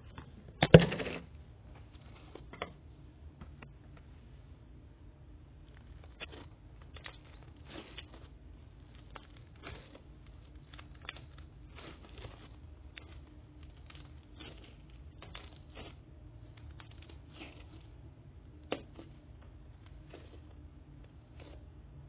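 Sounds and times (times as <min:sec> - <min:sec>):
hands squishing slime: 0:05.6 - 0:22.0.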